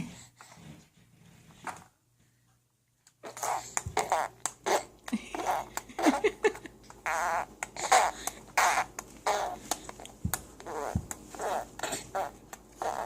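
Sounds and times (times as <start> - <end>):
baby blowing raspberries: 3.2 - 6.2, 7.0 - 13.0.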